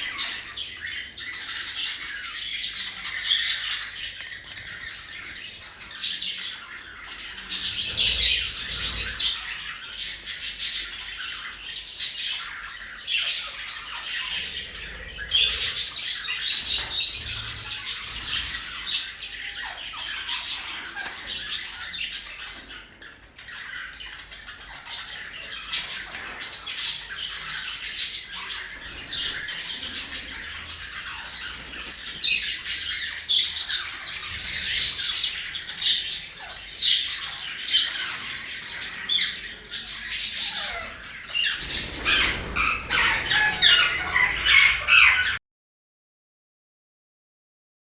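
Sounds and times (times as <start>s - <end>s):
parrots squawking and chirping: 0.0s - 45.4s.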